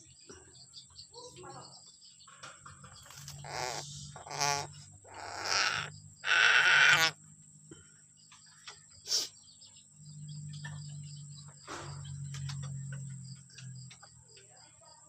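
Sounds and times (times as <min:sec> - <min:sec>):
harsh raspy bird calls: 0:02.8 - 0:07.3, 0:09.0 - 0:09.6.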